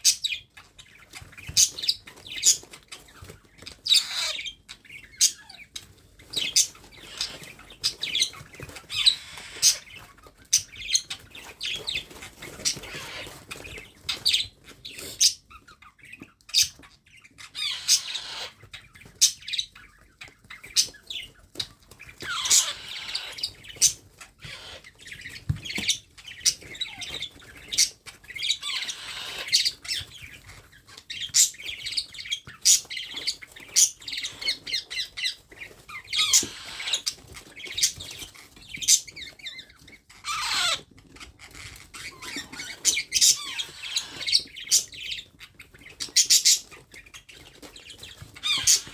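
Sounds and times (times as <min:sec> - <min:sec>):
parrot squawking: 0:03.8 - 0:05.6, 0:06.4 - 0:12.0, 0:12.6 - 0:13.4, 0:17.4 - 0:18.6, 0:22.2 - 0:25.2, 0:26.5 - 0:30.0, 0:32.6 - 0:38.0, 0:40.2 - 0:40.9, 0:41.5 - 0:45.0, 0:48.4 - 0:48.9.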